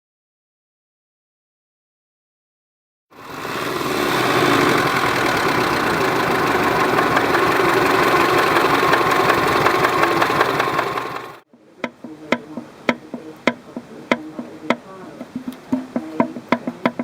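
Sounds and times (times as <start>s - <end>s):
engine running with knock: 3.2s - 11.4s.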